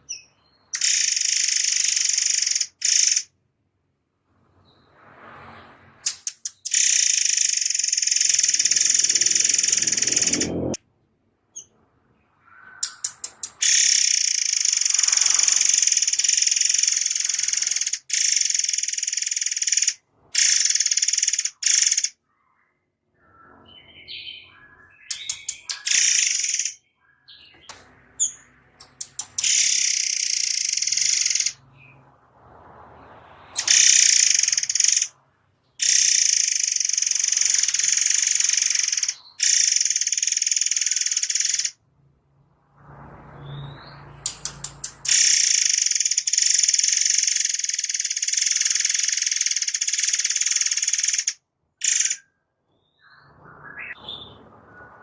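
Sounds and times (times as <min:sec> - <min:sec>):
songbird rapid high trills: 0:06.0 - 0:10.8, 0:12.5 - 0:22.2, 0:25.1 - 0:26.8, 0:28.2 - 0:31.9, 0:33.5 - 0:35.2, 0:35.8 - 0:41.8, 0:43.4 - 0:52.2
soft bird chirps: 0:11.5 - 0:32.1, 0:43.3 - 0:55.0.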